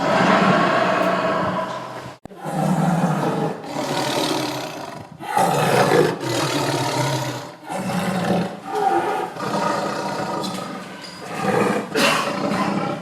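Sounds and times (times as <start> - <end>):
tiger roaring: 0.0 - 13.0.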